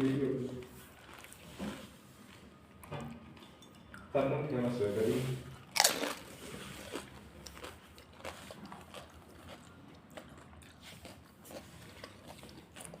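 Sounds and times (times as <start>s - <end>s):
faint chewing: 0.0s - 4.1s, 5.5s - 13.0s
crisp shells crunching: 5.7s - 9.7s.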